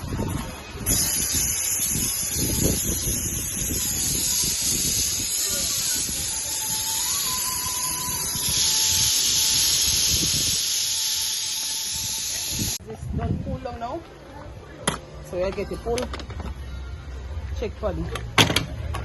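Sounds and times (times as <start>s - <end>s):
pressure cooker steam hissing: 0.8s - 12.8s
faint thin whistling: 5.4s - 12.8s.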